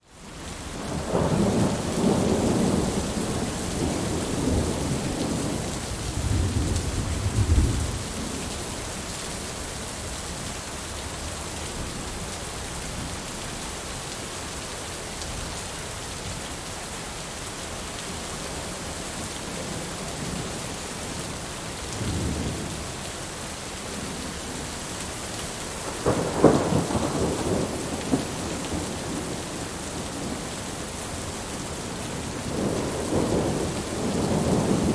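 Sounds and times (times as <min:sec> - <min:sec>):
steady rain: 0:00.0 - 0:34.9
rolling thunder: 0:00.9 - 0:08.4, 0:25.8 - 0:30.6, 0:32.2 - 0:34.9.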